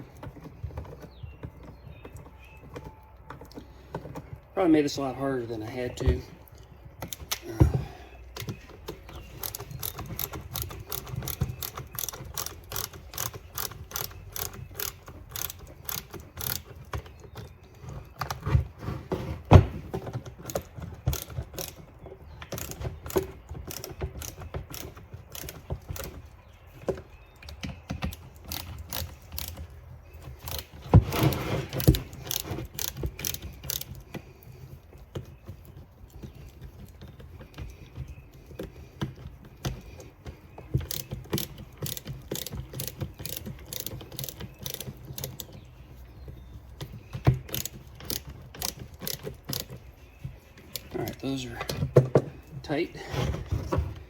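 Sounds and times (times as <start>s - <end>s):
hand tool clicking: 8.4s - 18.4s, 27.4s - 34.3s, 36.1s - 45.6s, 46.8s - 49.9s.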